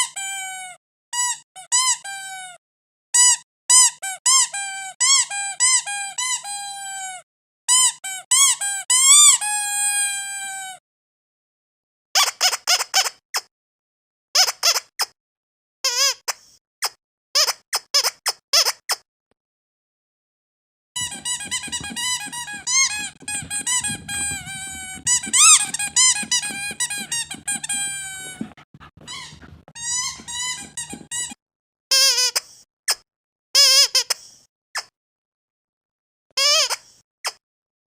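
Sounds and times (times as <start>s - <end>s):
squeaky dog toy squeaking: 0.0s - 2.6s, 3.2s - 10.7s, 12.2s - 13.5s, 14.4s - 15.0s, 15.8s - 16.3s, 21.0s - 32.4s, 33.6s - 34.1s, 36.4s - 36.8s.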